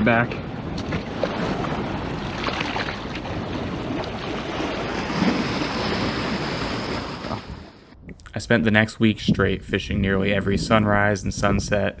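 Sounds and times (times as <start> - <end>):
ocean surf washing in: 0.0 - 8.0.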